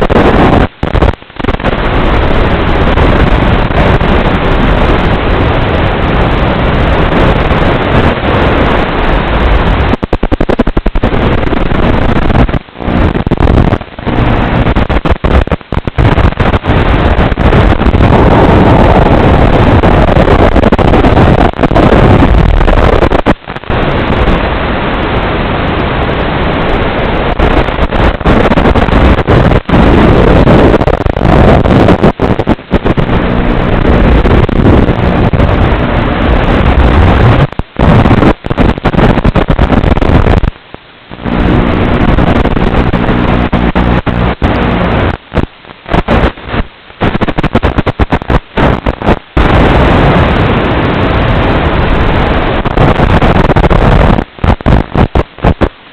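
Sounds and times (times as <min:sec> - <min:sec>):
wind buffeting: 0:00.1 - 0:40.5
drone motor hum: 0:11.0 - 0:23.0, 0:28.0 - 0:38.2, 0:41.1 - 0:45.0.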